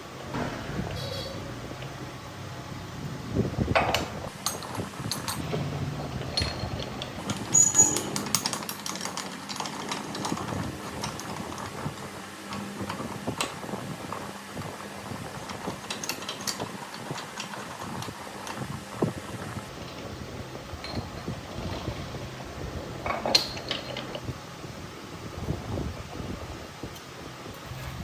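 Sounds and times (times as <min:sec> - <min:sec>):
metal lathe humming: 0:00.4 - 0:13.2
metallic clicks and clinks: 0:03.8 - 0:05.6, 0:06.2 - 0:11.2.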